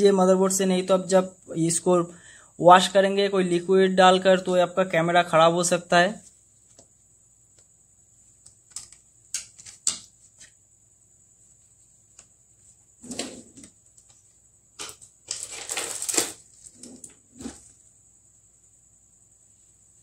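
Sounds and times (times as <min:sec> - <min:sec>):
scraping and rustling: 0:12.6 - 0:14.2, 0:14.9 - 0:17.8.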